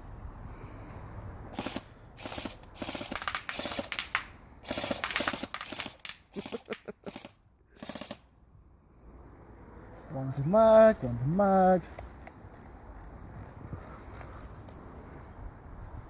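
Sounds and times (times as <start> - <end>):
electric airsoft gun firing bursts: 1.5 - 8.2.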